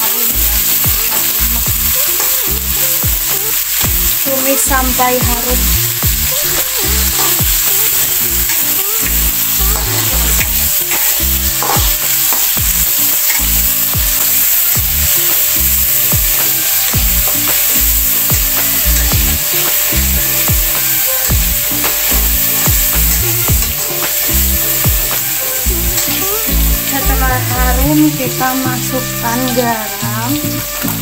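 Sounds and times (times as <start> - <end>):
food sizzling in hot oil: 0.0 - 31.0
utensil clicking against pan: 5.4 - 26.3.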